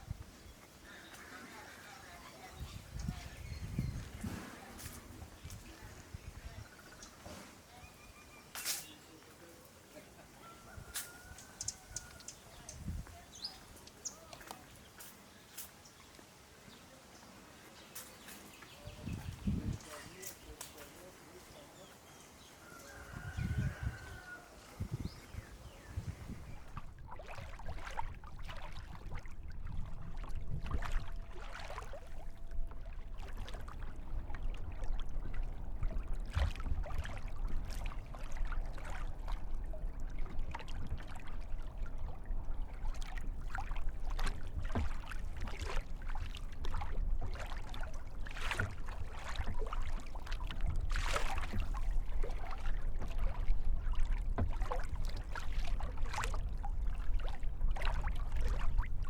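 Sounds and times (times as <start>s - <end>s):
paddle splashing in water: 0.0s - 6.6s, 22.7s - 59.0s.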